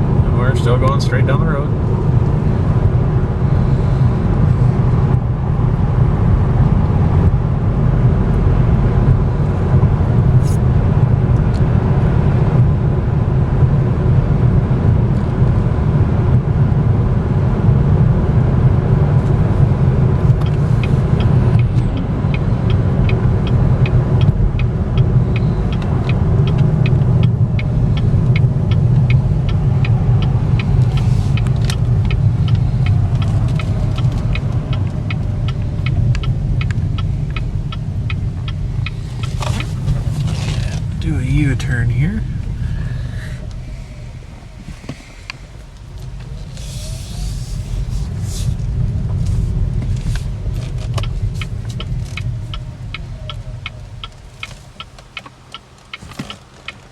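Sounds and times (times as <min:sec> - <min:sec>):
road and tyre rumble in car: 0:00.0 - 0:56.9.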